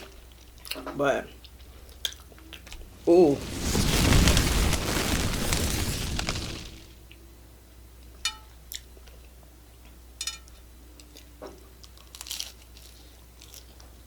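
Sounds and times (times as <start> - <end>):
crunchy tacos being chewed: 12.0 - 13.7.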